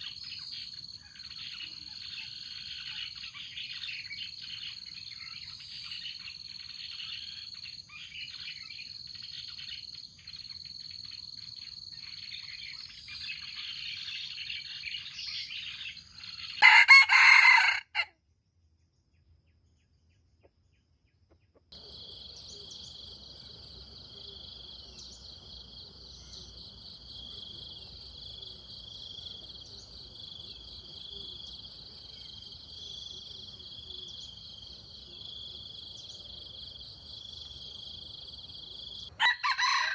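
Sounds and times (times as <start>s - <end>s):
small birds chirping: 0.0s - 16.8s
insects pulsing trill: 0.0s - 17.8s
rooster crowing: 16.6s - 18.1s, 39.1s - 39.9s.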